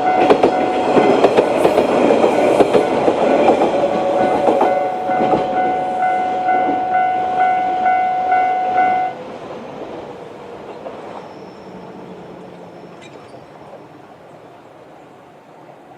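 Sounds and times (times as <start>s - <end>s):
diesel railcars passing: 0.0s - 15.9s
level crossing warning bell: 4.0s - 9.2s.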